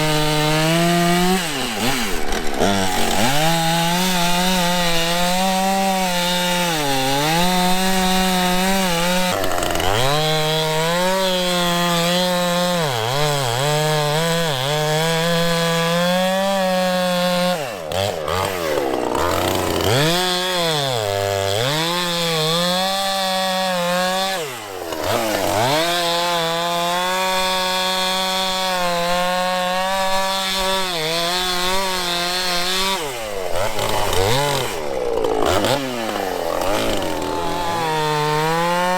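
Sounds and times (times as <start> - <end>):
chainsaw cutting tree trunk: 0.0 - 38.9.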